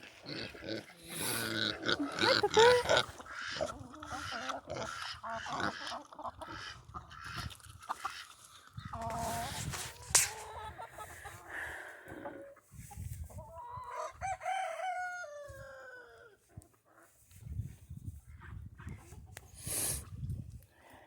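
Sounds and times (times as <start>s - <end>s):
chicken clucking: 0.3s - 17.3s, 18.4s - 19.6s
rooster crowing: 14.0s - 16.1s.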